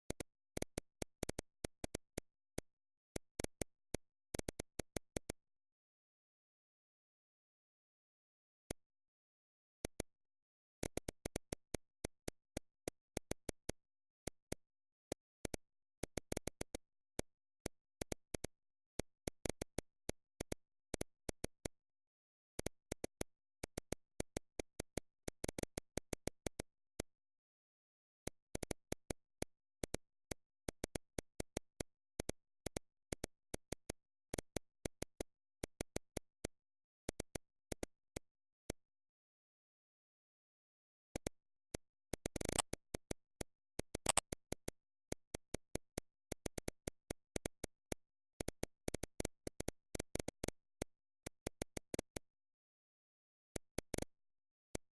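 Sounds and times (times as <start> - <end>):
sharp clicks: 41.2 - 52.2.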